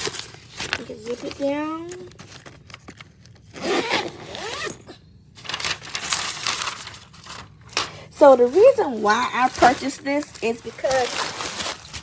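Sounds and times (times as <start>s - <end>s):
suitcase zipper being pulled: 3.6s - 4.8s.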